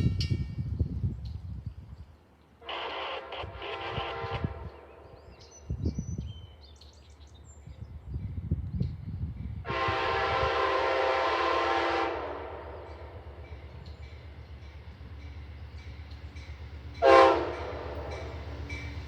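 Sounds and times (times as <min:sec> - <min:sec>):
train rumbling past: 0:00.0 - 0:19.0
train air horn: 0:02.6 - 0:05.1, 0:09.6 - 0:13.4, 0:17.0 - 0:18.6.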